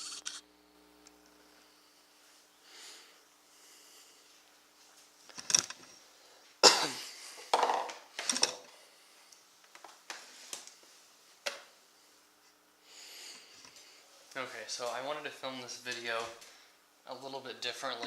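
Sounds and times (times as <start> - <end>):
objects knocking on hard surface: 7.5 - 8.6.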